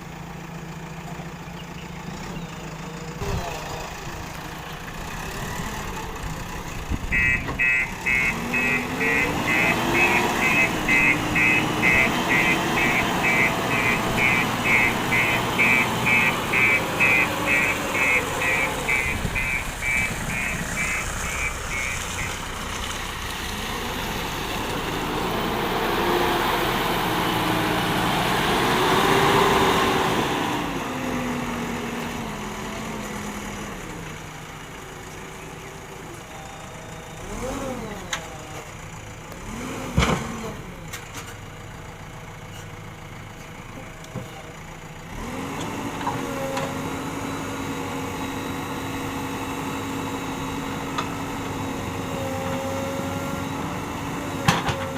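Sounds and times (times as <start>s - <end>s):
diesel engine revving: 0.0s - 54.9s
rapid repeating beep: 7.2s - 22.3s.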